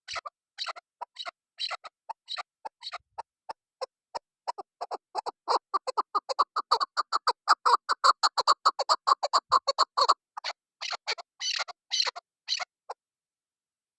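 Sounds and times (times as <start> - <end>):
partridge clucking calls: 0.0 - 13.0.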